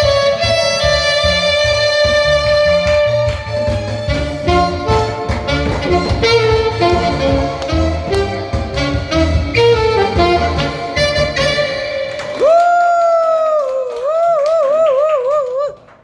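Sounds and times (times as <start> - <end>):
bass and drums accompaniment: 0.0 - 11.8
saxophone playing: 0.0 - 12.4.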